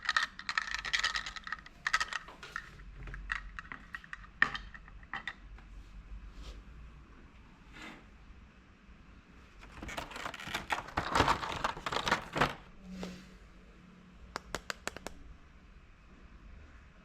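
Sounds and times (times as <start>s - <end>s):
plastic packaging crinkling: 9.6s - 12.7s.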